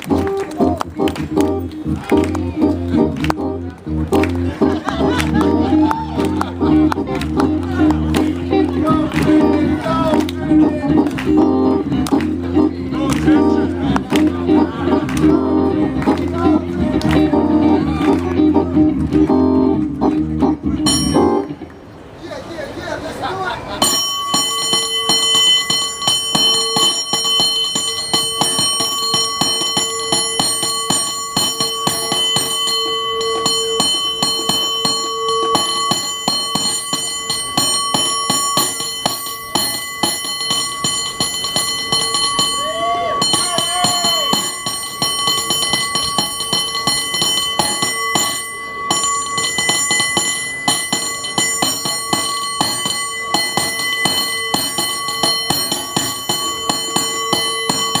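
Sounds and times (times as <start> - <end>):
cable car bell ringing rapidly: 20.8 - 21.5, 23.7 - 58.0.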